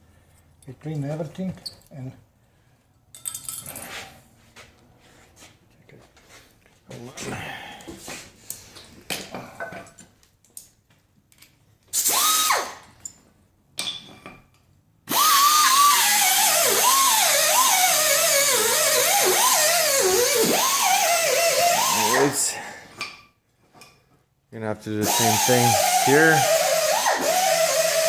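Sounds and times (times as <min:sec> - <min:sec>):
power tool wire brush whining: 0:12.0 - 0:12.9, 0:15.1 - 0:22.6, 0:25.0 - 0:28.0.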